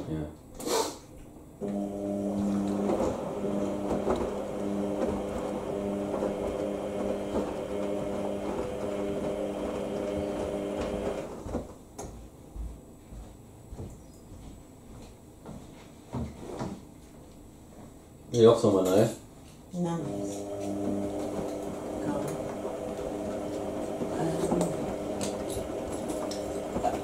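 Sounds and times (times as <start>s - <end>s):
washing machine drum humming: 1.6s - 11.7s, 20.0s - 27.0s.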